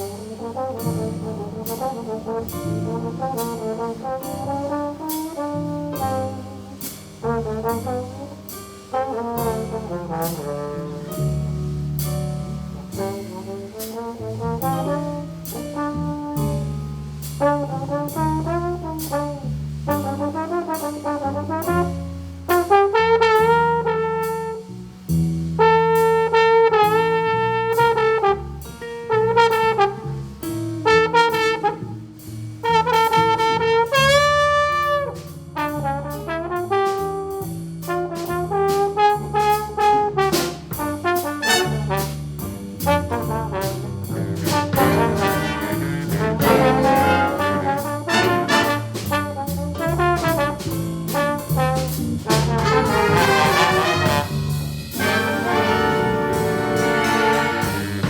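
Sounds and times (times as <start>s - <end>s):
bass line: 0.0s - 58.0s
brass melody with vibrato: 17.5s - 24.7s, 25.6s - 30.1s, 30.8s - 37.1s, 37.9s - 50.6s, 51.2s - 58.0s.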